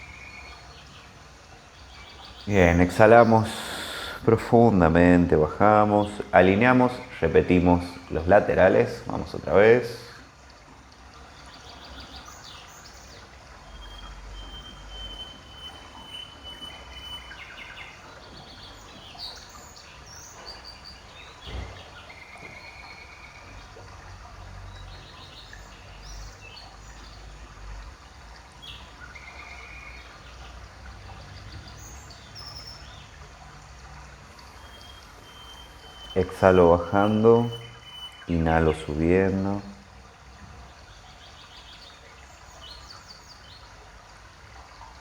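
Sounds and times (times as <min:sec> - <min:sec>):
birds chirping and whistling: 0:01.8 - 0:04.5, 0:11.5 - 0:23.5, 0:31.4 - 0:33.1, 0:34.4 - 0:39.6.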